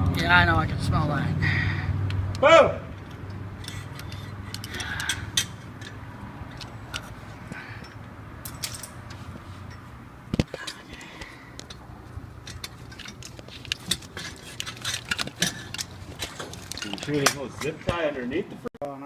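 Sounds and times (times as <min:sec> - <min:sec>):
metal tools clinking: 0:02.9 - 0:17.9.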